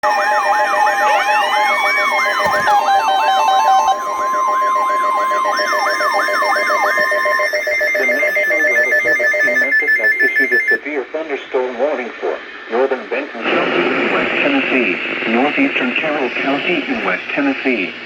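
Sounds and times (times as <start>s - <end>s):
wailing siren: 0.0s - 10.8s
steady high tone: 0.0s - 10.9s
stuttering beeps: 2.6s - 10.8s.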